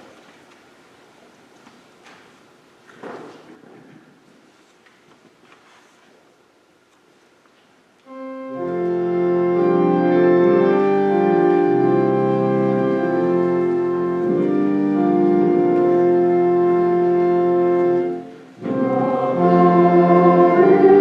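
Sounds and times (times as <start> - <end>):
church organ chords: 8.1 - 21.0.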